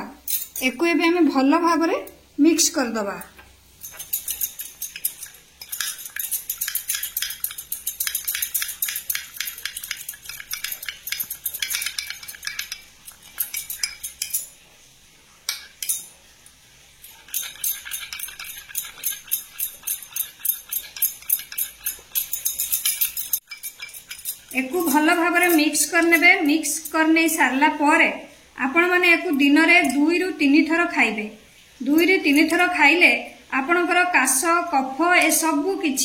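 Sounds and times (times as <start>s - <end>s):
spoon clinking while stirring: 3.8s - 14.6s, 15.5s - 16.1s, 17.0s - 27.1s.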